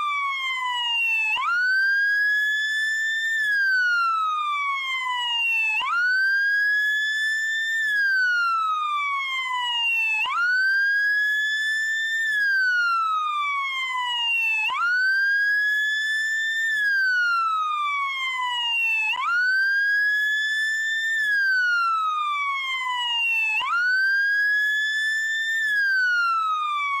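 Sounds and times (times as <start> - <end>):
police car siren wailing: 16.6 - 27.0.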